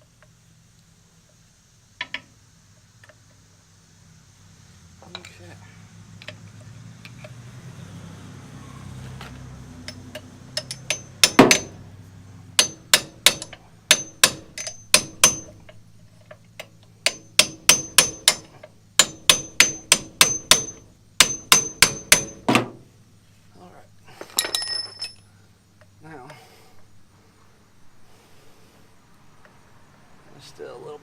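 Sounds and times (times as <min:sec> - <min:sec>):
hammer striking metal: 0:09.8 - 0:11.9, 0:12.6 - 0:15.7, 0:17.0 - 0:22.8.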